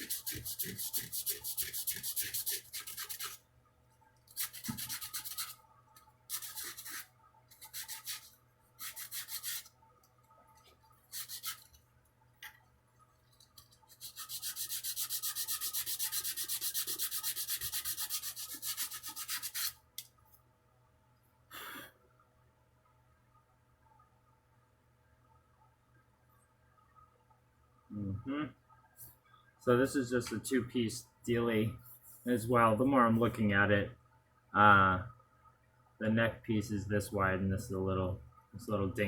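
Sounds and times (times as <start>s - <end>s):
sandpaper rubbing on wood: 0.0s - 3.4s, 6.3s - 9.7s, 11.1s - 11.7s, 14.0s - 19.8s.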